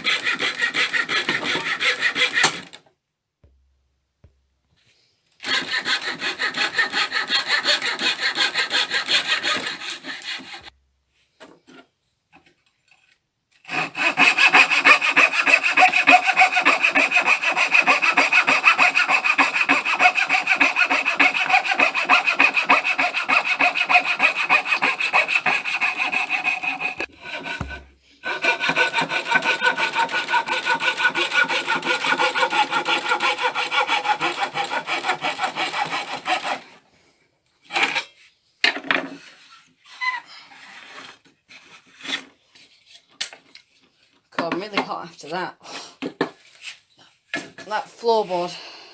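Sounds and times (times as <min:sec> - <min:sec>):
hand saw cutting wood: 0:00.0 - 0:02.8, 0:05.4 - 0:10.7, 0:13.6 - 0:36.8, 0:37.6 - 0:38.1, 0:47.4 - 0:48.5.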